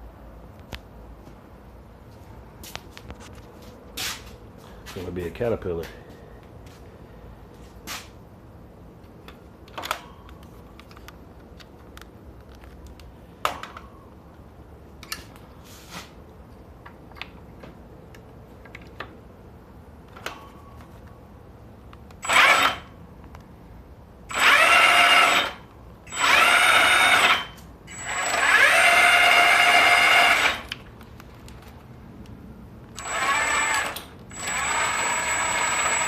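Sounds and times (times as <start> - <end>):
small electric motor whirring: 22.2 - 22.9, 24.3 - 30.7, 33.0 - 36.0.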